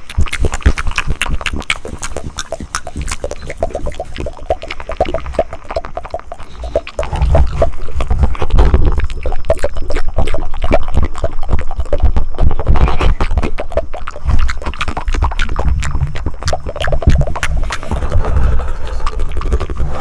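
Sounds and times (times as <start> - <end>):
wet mouth clicks and smacks: 0.0 - 20.0
low rumble: 17.6 - 20.0.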